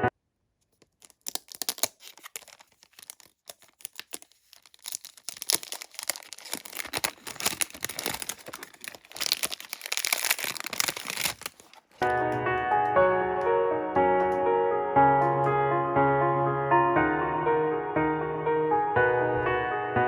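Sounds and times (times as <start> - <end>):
packaging crinkling and tearing: 0.8 - 12.4.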